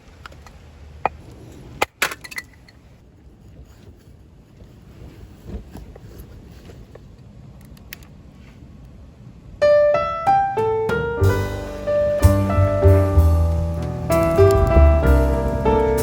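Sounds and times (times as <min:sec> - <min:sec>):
faint low rumble: 0:08.1 - 0:16.0
piano music: 0:09.6 - 0:16.0.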